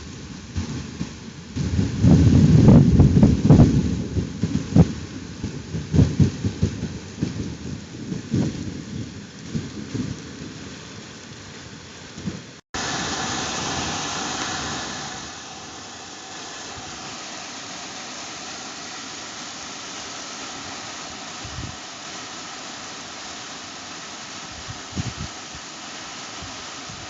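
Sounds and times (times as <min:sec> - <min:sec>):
thunder rumbling: 0:00.0 - 0:17.4
heavy rain hiss: 0:00.0 - 0:27.0.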